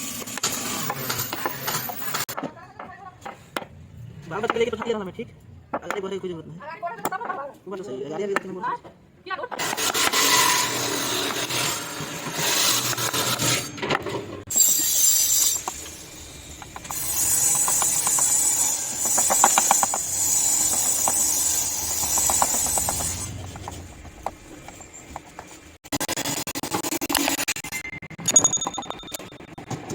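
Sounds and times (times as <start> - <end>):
carving tools scraping wood: 9.6 - 13.8, 14.5 - 27.5.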